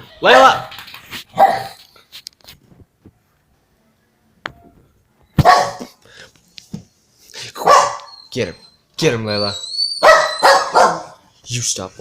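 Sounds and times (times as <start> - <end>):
dog barking: 1.4 - 1.8, 5.4 - 6.0, 7.6 - 8.1, 10.0 - 11.2.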